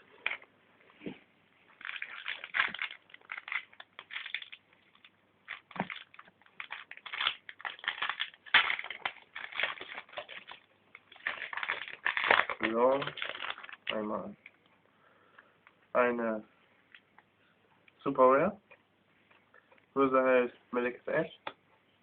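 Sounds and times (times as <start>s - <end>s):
wrappers crinkling and rustling: 1.7s - 14.6s.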